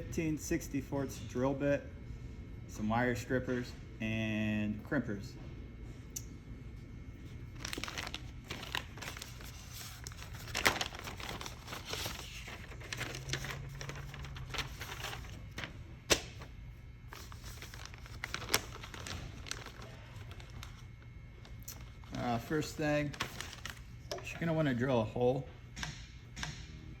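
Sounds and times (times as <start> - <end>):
handling rustling: 7.6 - 15.7.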